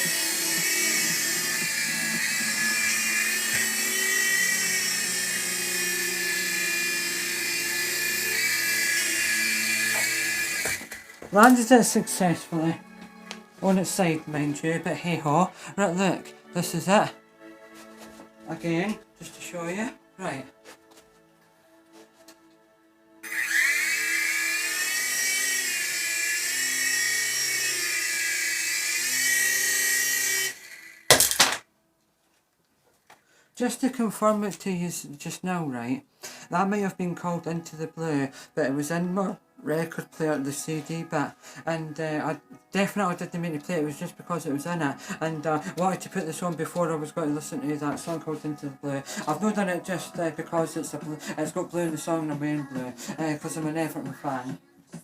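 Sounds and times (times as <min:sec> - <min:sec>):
remote-control helicopter whine: 0:00.0 - 0:11.3, 0:23.2 - 0:31.1.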